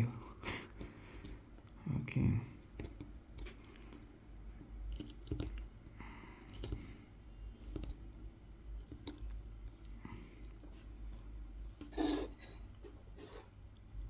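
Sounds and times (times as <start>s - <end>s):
knife scraping wood: 11.8s - 13.5s.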